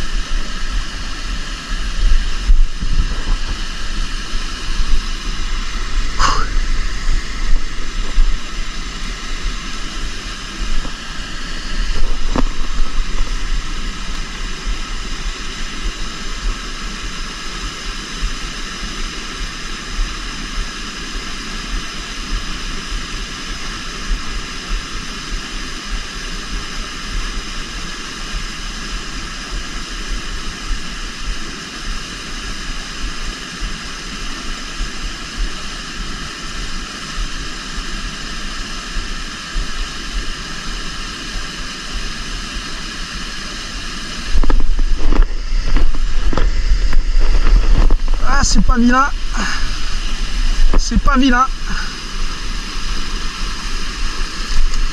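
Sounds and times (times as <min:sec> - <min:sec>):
wind rumble on microphone: 0:00.0 - 0:16.8, 0:44.2 - 0:54.9
river water rushing: 0:00.0 - 0:54.9
microphone handling noise: 0:01.7 - 0:09.8, 0:10.6 - 0:14.4, 0:44.2 - 0:54.9.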